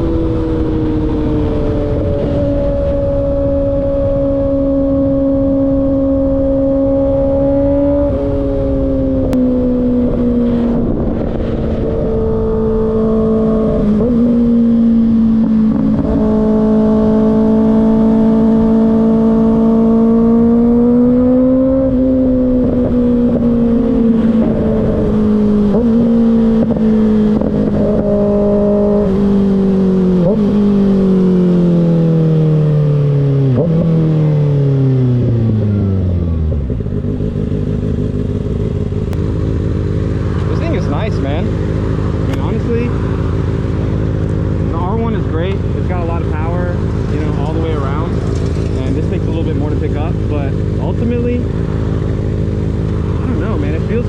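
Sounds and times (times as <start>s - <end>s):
wind rush: 0.0s - 19.4s
motorcycle engine at speed: 0.0s - 54.0s.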